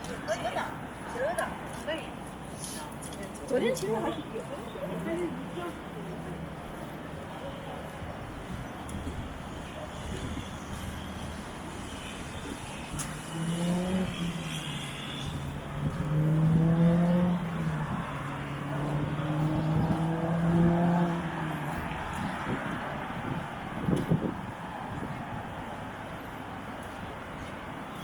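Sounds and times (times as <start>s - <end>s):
traffic noise: 0.0s - 28.0s
car engine droning: 12.4s - 21.8s.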